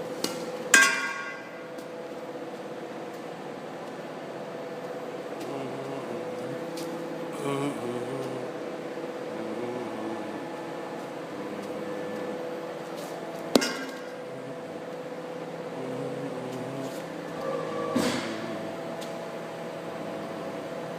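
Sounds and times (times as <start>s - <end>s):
tube-bending machine motor hum: 1.4s - 20.9s
sharp metal clank: 13.6s - 14.1s.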